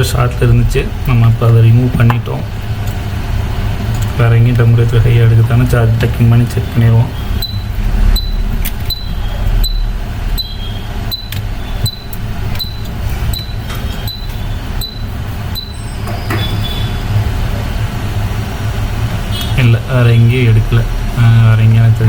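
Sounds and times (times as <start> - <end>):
low equipment hum: 0.0 - 22.0
short high electronic beeps: 7.2 - 17.1.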